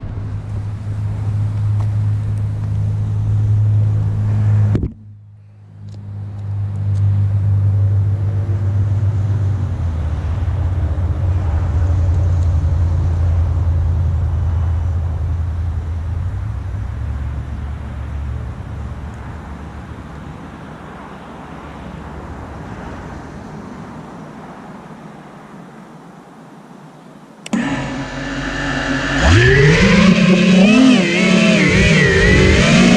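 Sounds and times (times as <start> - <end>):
quadcopter motor rumble: 27.5 - 32.9.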